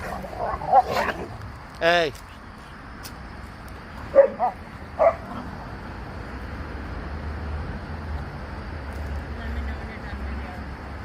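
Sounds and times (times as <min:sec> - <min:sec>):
dog yipping barks: 0:04.1 - 0:05.3.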